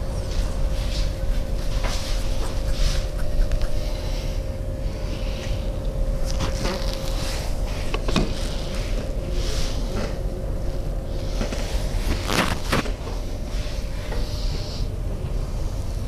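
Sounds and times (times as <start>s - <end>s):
steady low hum: 0.0s - 16.0s
hands rubbing skin: 0.3s - 4.0s.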